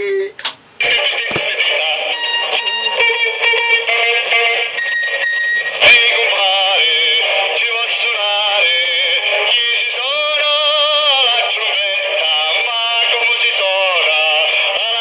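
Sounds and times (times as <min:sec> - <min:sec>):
music with singing over radio speaker: 0:00.4 - 0:15.0.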